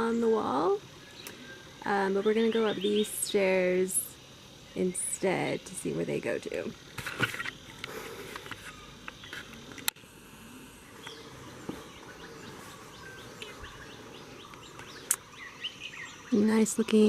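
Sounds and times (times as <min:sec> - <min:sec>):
birds chirping: 0:00.0 - 0:17.0
faint steady hiss: 0:00.0 - 0:17.0
insects: 0:00.0 - 0:17.0
sharp clicks: 0:06.9 - 0:10.0, 0:14.4 - 0:15.2.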